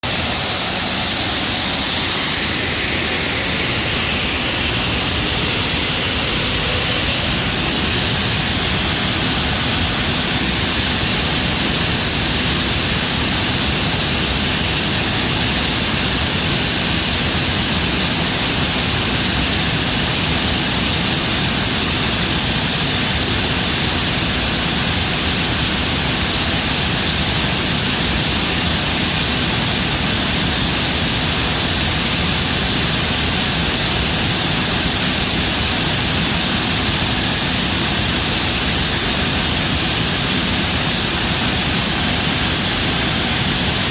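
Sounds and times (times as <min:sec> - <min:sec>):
air compressor running: 0:00.0 - 0:43.9.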